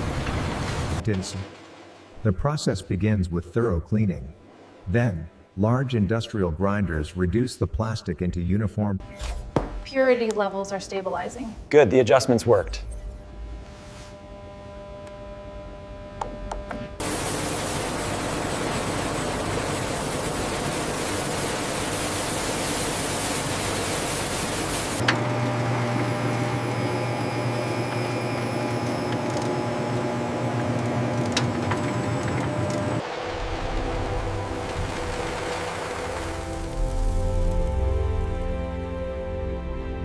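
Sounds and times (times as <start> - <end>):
machine low steady hum: 12.5 - 38.5
loud rushing machinery noise: 17.0 - 37.8.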